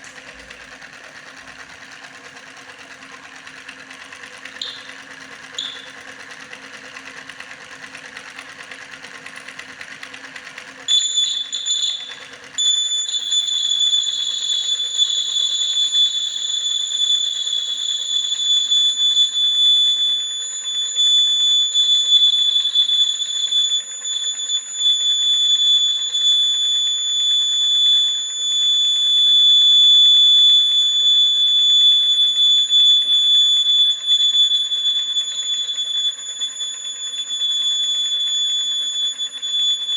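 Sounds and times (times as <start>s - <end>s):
high-pitched electronic buzzer: 4.6s - 5.0s, 5.6s - 6.0s, 10.9s - 16.2s.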